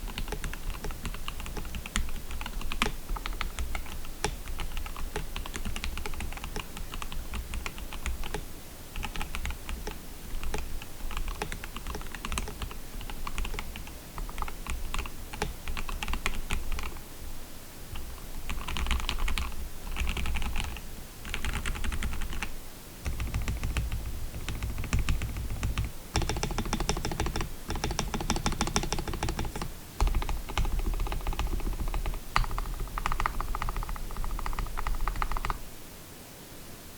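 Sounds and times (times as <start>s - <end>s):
microphone hiss: 0.0s - 36.9s
mechanical keyboard key clacks: 23.1s - 35.6s.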